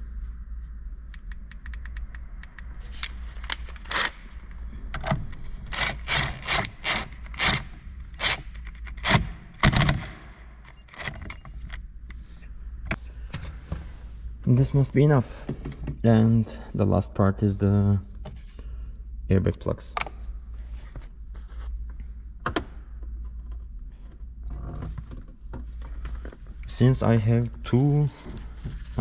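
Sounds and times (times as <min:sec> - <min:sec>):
power tool driving a bolt: 0:03.8 - 0:04.2, 0:05.7 - 0:10.2.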